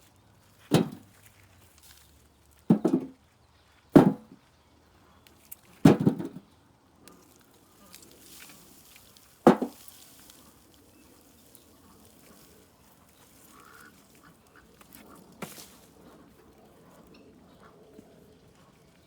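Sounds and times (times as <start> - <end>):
rustling and scraping of soil: 0.0 - 19.0
loud sharp knock: 4.0 - 4.4, 9.5 - 9.8.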